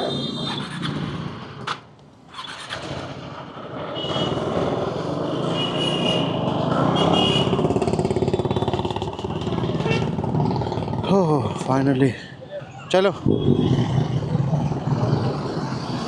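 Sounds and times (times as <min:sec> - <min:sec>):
motorcycle engine running: 0:06.4 - 0:11.7.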